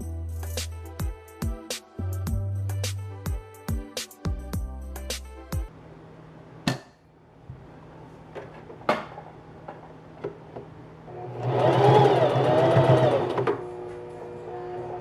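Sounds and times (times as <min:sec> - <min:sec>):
sewing machine stitching: 0:11.1 - 0:13.9.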